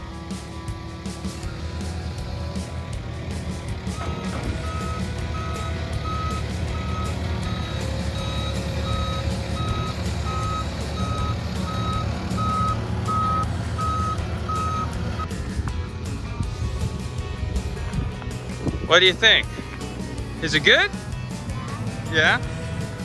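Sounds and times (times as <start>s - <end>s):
reversing alarm beeping: 0.0s - 15.4s
engine running: 0.0s - 23.0s.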